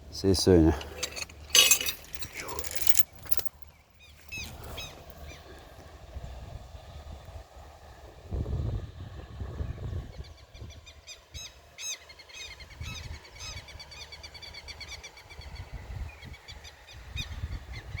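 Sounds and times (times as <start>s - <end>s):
low rumbling wind: 0.0s - 11.7s, 12.5s - 18.0s
small birds chirping and trilling: 2.4s - 5.6s.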